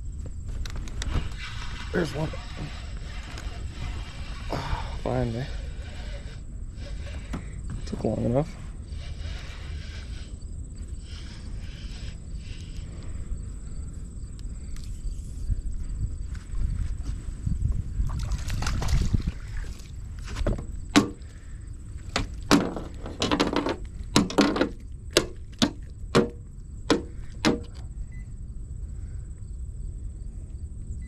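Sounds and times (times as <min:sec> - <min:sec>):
water splashing: 0:18.0 - 0:20.0
knocks and clatters on boat: 0:18.1 - 0:21.3, 0:22.0 - 0:27.9.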